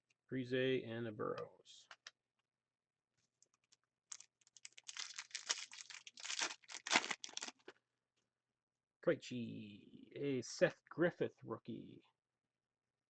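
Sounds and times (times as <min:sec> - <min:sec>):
foil wrapper tearing and crinkling: 0:04.1 - 0:07.7.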